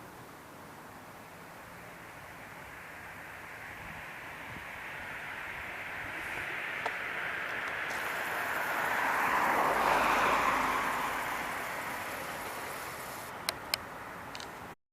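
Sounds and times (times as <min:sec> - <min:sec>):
vehicle tyres hissing on road: 0:00.0 - 0:14.7
small clicks: 0:13.4 - 0:14.5.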